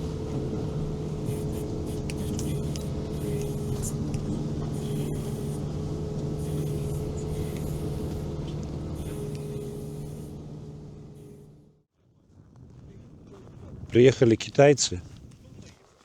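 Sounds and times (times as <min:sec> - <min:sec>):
vehicle engine running: 0:00.0 - 0:11.8.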